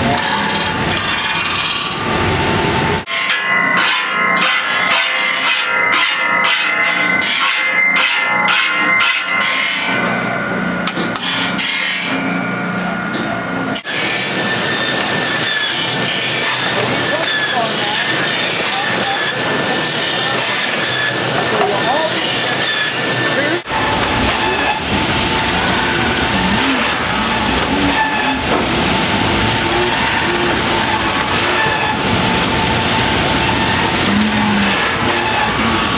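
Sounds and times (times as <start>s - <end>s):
steady hum: 2.7s - 24.3s
file scraping saw blade teeth: 3.1s - 10.1s, 10.8s - 12.2s, 13.8s - 23.6s
saw blade ringing: 3.1s - 12.6s.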